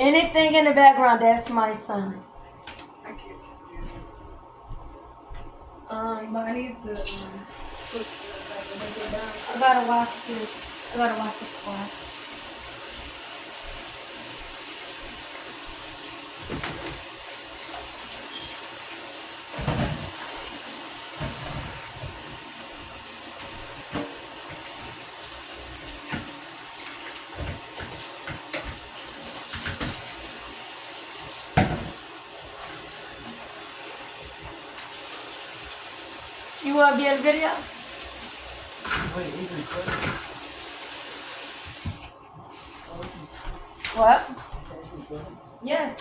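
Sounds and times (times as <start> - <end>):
tap running into a sink: 15.7 - 22.5, 23.3 - 35.8, 38.2 - 42.1
knocks and clunks in a sink: 16.4 - 17.1, 19.5 - 22.4, 23.4 - 25.0, 27.1 - 30.2, 31.5 - 32.1, 38.8 - 40.4.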